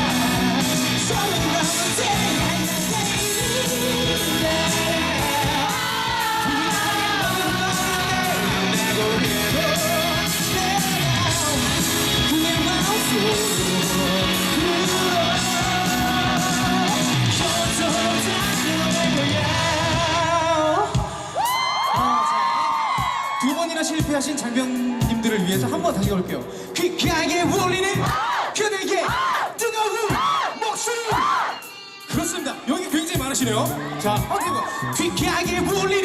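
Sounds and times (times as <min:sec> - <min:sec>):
person singing: 0:00.0 - 0:28.1
live rock band: 0:00.0 - 0:28.4, 0:29.1 - 0:36.0.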